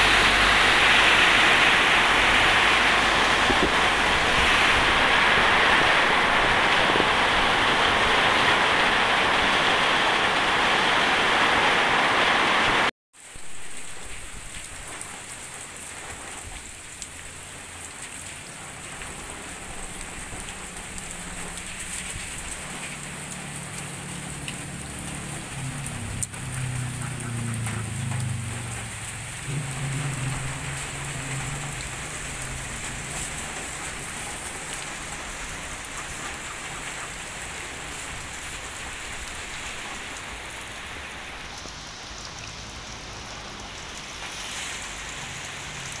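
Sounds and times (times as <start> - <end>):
heavy rain and wind: 0.0 - 46.0
light steady rain: 0.0 - 46.0
low rumble: 23.7 - 35.1.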